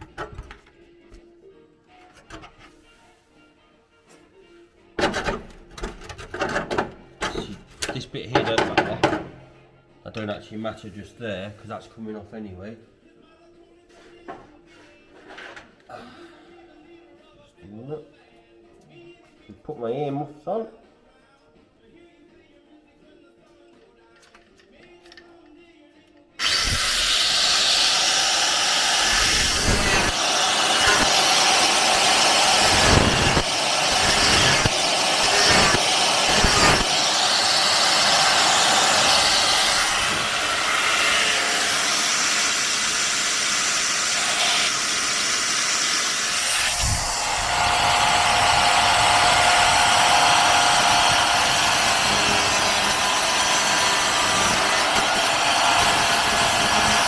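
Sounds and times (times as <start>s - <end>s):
angle grinder on sheet steel: 26.4s - 57.0s.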